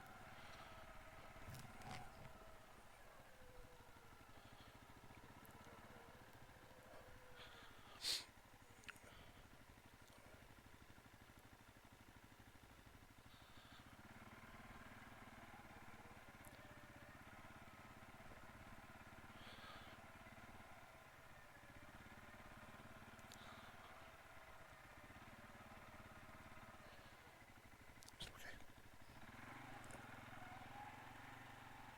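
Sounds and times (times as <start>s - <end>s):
atv engine running: 0.0s - 31.9s
faint ticks: 8.7s - 9.1s, 23.0s - 23.5s.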